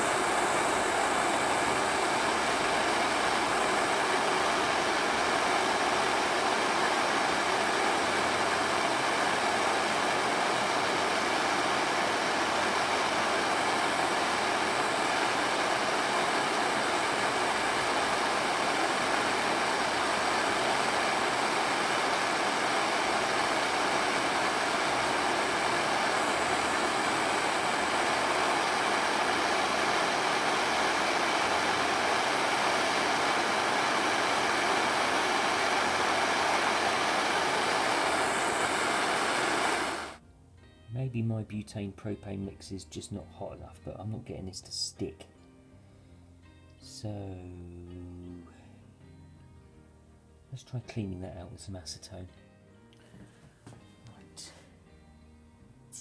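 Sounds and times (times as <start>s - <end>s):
gas torch hissing: 0.0s - 40.2s.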